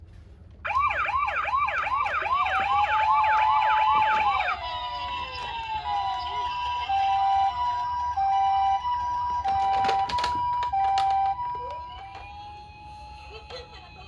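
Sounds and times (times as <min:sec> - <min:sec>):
toy ambulance sirens: 0:00.7 - 0:14.0.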